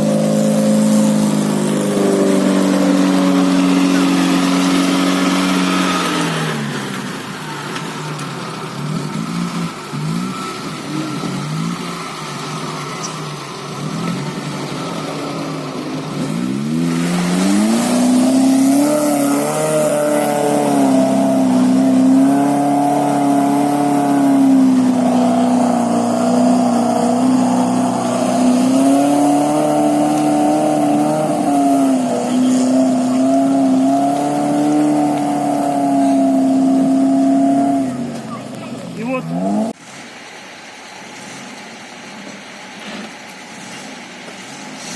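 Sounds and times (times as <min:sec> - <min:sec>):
van engine revving: 0:00.0 - 0:44.9.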